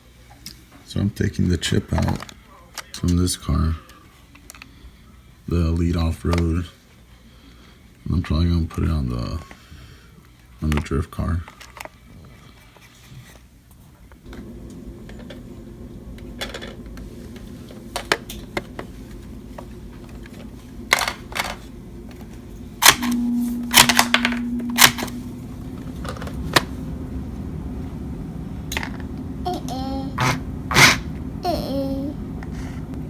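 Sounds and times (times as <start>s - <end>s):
steady low hum: 14.2s - 33.0s.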